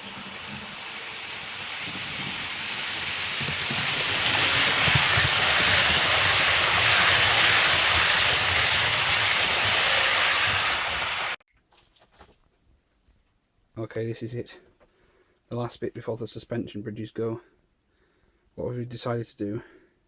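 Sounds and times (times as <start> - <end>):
model train running on track: 0.0 - 11.4.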